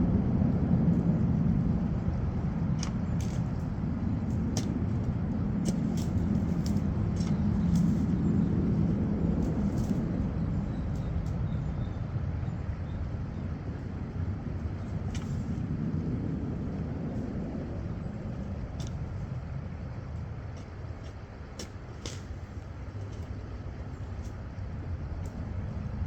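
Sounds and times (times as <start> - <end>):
vehicle engine and tyres rumbling: 0.0 - 26.0.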